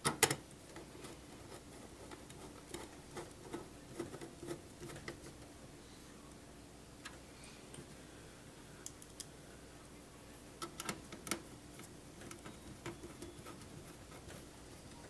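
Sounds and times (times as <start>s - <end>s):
computer parts clicking and tapping: 0.0s - 5.4s, 10.6s - 15.0s
faint steady hum: 0.0s - 15.0s.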